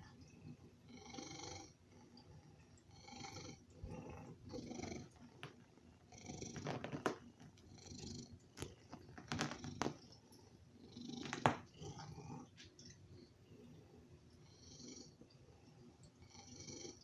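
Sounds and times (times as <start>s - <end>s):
cat purring loudly: 0.9s - 1.8s, 2.9s - 10.2s, 10.8s - 12.6s, 16.2s - 17.0s.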